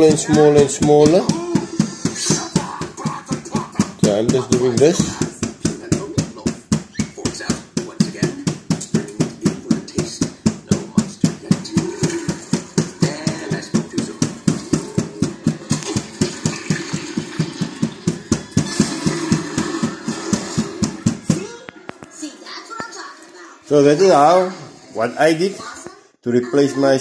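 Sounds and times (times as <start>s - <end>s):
rapid tapping on tv: 0.0s - 23.2s.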